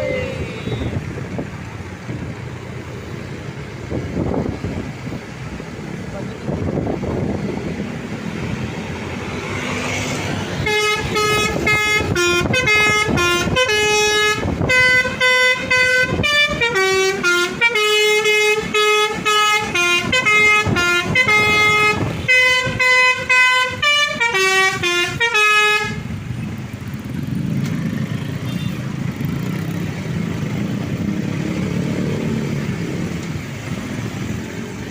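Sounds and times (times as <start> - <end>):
bus musical horn playing a tune: 0.0 - 1.0, 10.6 - 26.2
engine and road noise: 0.0 - 34.9.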